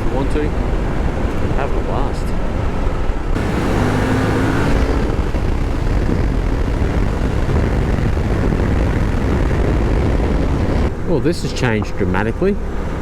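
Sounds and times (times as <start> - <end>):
wind noise on microphone: 0.0 - 12.1
motorcycle engine running: 3.4 - 10.9.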